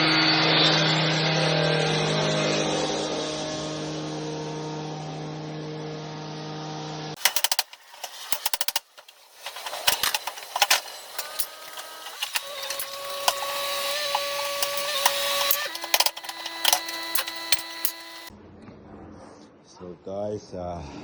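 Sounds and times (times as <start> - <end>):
machine hum: 7.2 - 18.3
mechanical clattering and knocks: 7.2 - 18.3.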